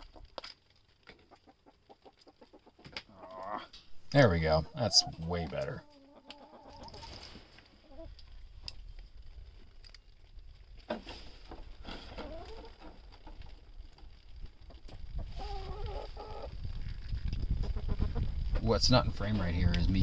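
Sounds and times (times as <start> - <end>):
chickens clucking: 1.1 - 8.1, 12.1 - 13.6, 14.6 - 16.6, 17.6 - 18.7.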